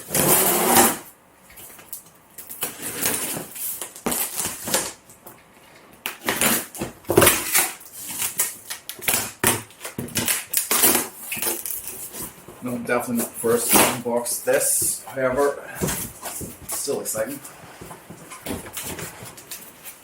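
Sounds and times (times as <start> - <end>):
cardboard box scraping and tearing: 0.0 - 1.0.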